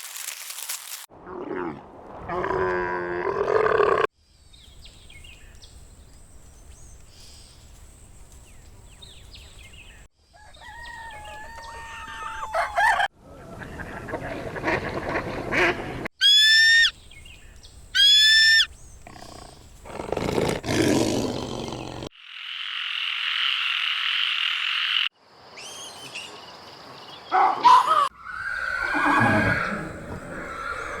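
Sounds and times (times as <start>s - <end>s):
short high-pitched animal calls: 16.2s - 16.9s, 18.0s - 18.7s.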